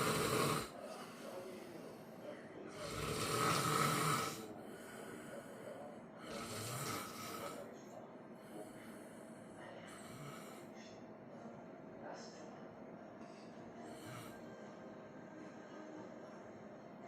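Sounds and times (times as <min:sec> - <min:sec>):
person snoring: 0:00.0 - 0:01.3, 0:02.7 - 0:05.6, 0:06.2 - 0:07.6, 0:09.9 - 0:10.7, 0:13.9 - 0:14.4.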